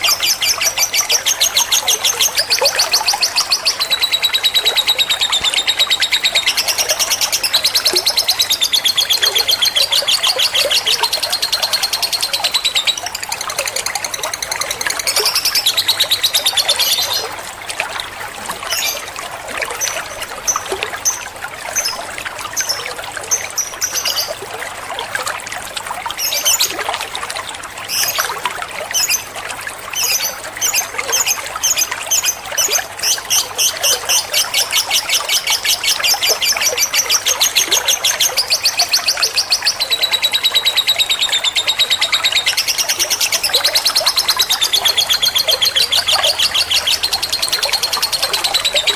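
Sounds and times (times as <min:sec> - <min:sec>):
bird chirping and trilling: 0:00.0 - 0:17.4, 0:29.9 - 0:48.9.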